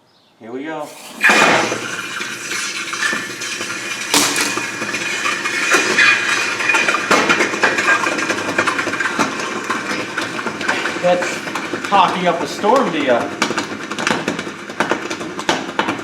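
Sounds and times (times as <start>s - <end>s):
hot metal sizzling in water: 0.8s - 13.6s.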